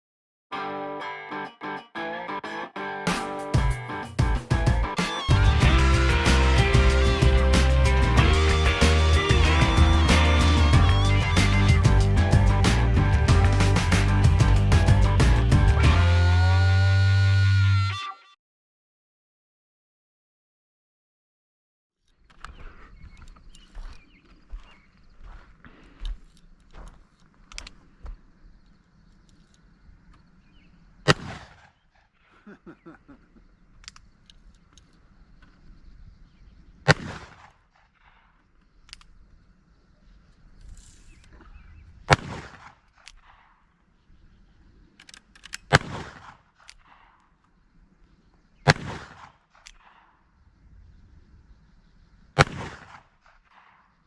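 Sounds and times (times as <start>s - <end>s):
revolver handling rustle: 22.1s - 30.3s.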